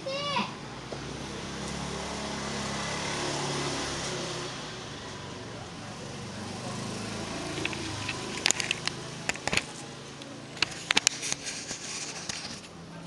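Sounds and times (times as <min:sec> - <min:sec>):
plastic parts clicking and knocking: 0:07.5 - 0:09.8.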